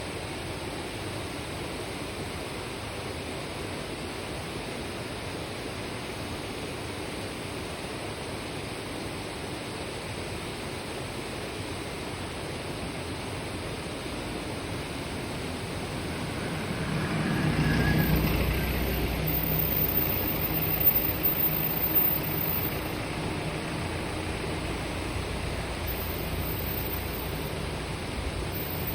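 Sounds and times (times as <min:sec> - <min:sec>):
low engine rumble: 0:12.9 - 0:28.9.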